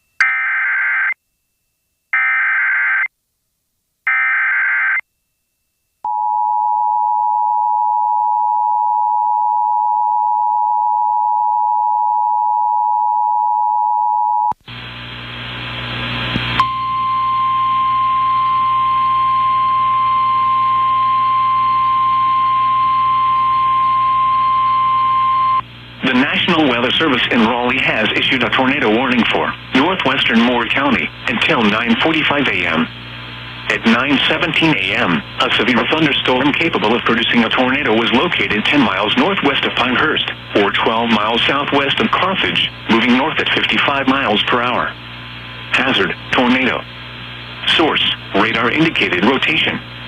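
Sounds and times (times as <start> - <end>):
radio hiss and hum: 14.6 - 16.8, 17.5 - 50.0.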